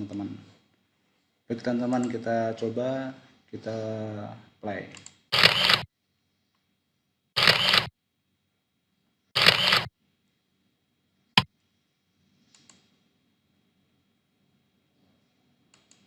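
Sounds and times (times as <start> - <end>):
camera shutter sound effect: 5.3 - 5.9, 7.4 - 7.9, 9.4 - 9.9
sharp click: 7.4 - 7.9, 9.4 - 9.9.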